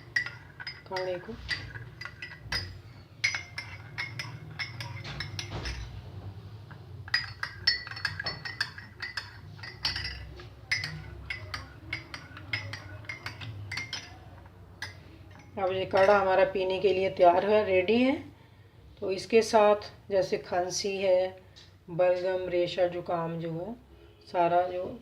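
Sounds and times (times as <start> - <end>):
metal spoon clinking against cups: 0.0 - 17.2.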